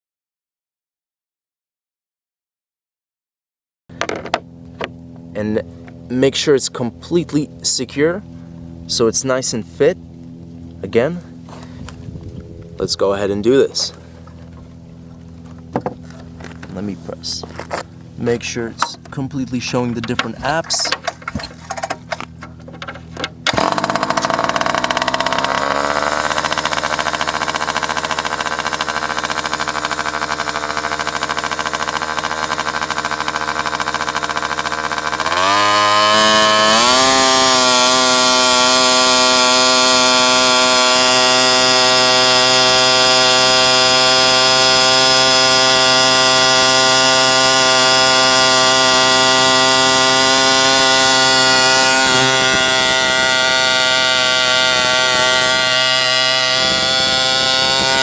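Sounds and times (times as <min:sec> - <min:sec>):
engine revving high: 0:23.4 - 0:58.0.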